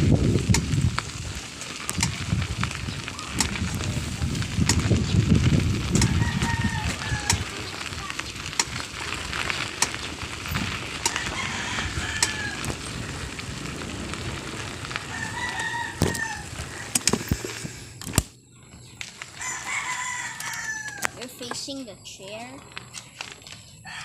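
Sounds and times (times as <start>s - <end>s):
rooster crowing: 6.0s - 7.5s, 11.1s - 12.8s, 15.0s - 17.0s, 19.3s - 21.2s.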